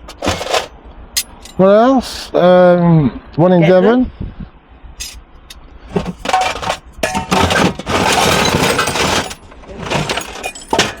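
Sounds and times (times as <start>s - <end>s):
metal objects clinking and clattering: 0.0s - 1.6s, 5.0s - 5.2s, 5.9s - 11.0s.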